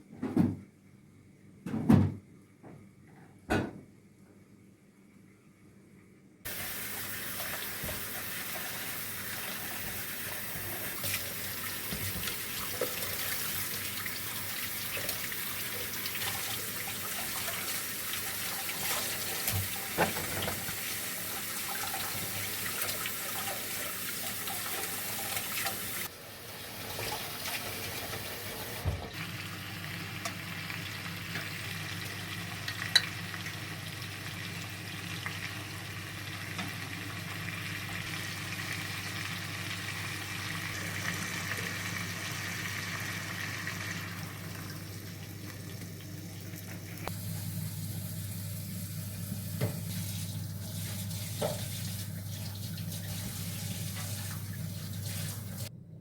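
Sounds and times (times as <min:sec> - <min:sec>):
running water: 0:06.5 - 0:29.4, 0:49.1 - 0:55.7
food frying: 0:06.5 - 0:55.7.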